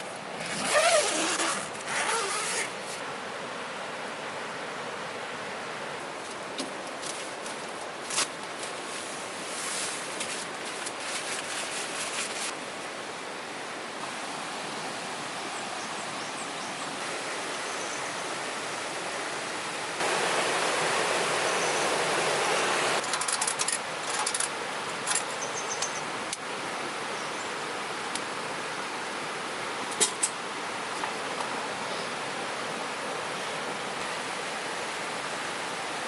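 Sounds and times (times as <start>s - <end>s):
heavy rain hissing: 11.6s - 23.0s.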